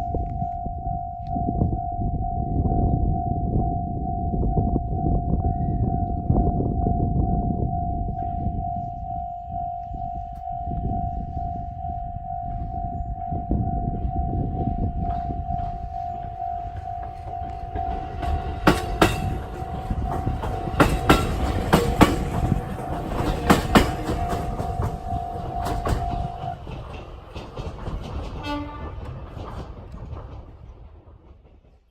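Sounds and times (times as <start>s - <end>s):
train rumbling: 0.0s - 31.9s
wheels clacking over rail joints: 16.0s - 31.9s.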